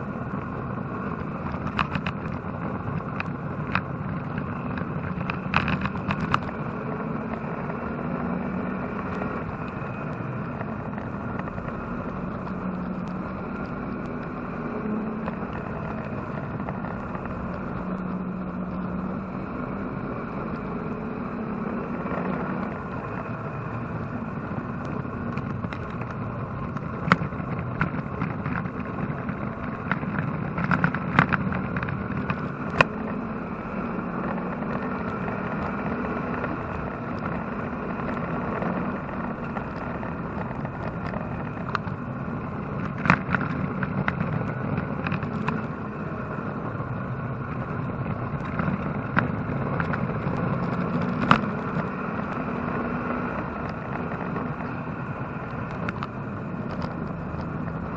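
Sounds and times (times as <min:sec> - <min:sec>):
race car engine running: 0:00.0 - 0:57.9.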